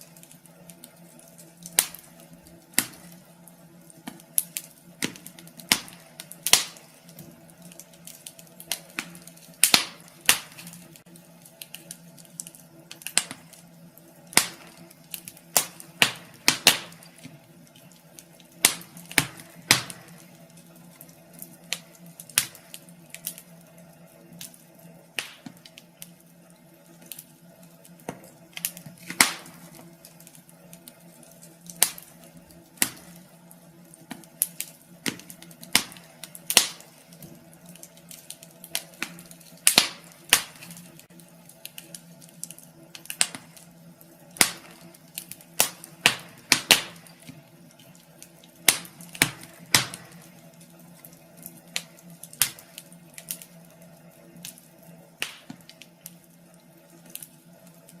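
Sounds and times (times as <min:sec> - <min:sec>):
steady low hum: 0:00.0 - 0:58.0
wood fire crackling: 0:00.0 - 0:58.0.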